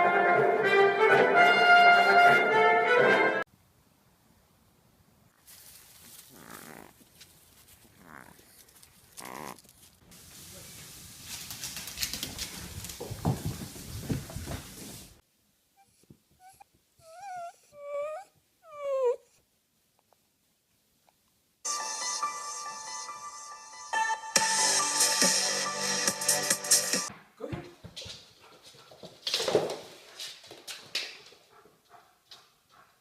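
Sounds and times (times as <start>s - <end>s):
rustling and bumping: 11.3s - 15.2s
dog whining: 15.8s - 19.4s.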